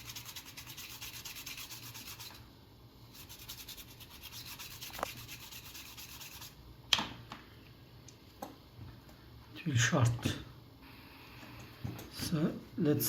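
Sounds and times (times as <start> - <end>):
brush scrubbing circuit board: 0.0 - 2.4, 3.1 - 6.6.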